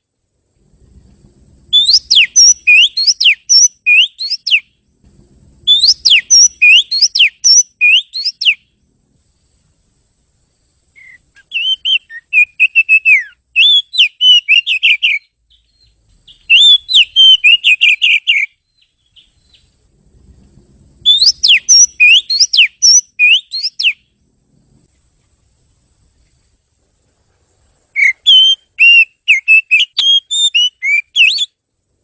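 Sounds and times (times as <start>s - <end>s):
bird whistling song: 1.7s - 4.8s, 5.6s - 8.7s, 10.9s - 19.8s, 21.0s - 24.2s, 27.9s - 31.6s.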